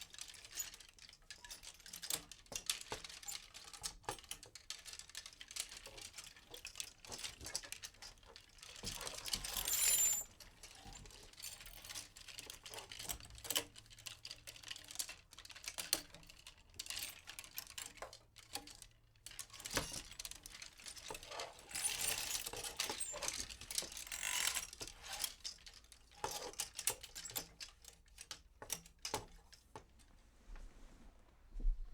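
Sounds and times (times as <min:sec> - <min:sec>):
hangers clicking together: 0:11.3 - 0:29.4
hangers scraping along rail: 0:21.1 - 0:25.4.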